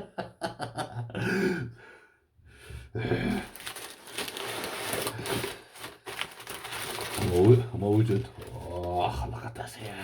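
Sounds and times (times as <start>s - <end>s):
rustling and handling noise: 3.1s - 10.0s.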